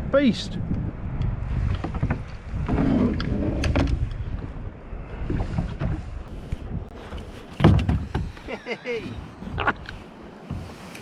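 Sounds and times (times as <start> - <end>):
wind buffeting microphone: 0.0 - 11.0
water slapping boat hull: 5.1 - 11.0
knocks and thumps: 7.1 - 8.5.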